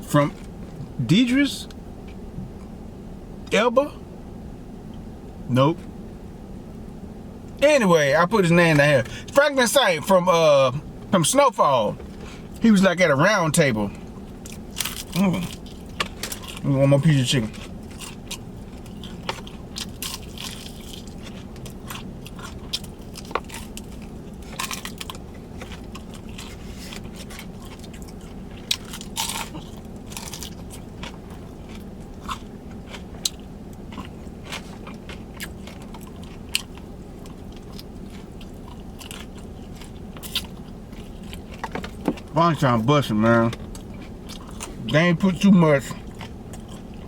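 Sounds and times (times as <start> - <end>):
chewing crispy fried chicken: 13.5 - 47.0.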